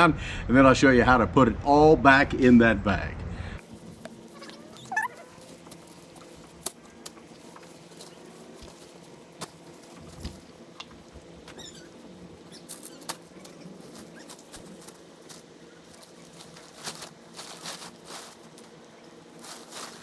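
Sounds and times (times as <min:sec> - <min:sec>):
tent gear rustling: 0:03.6 - 0:10.5, 0:11.6 - 0:20.0.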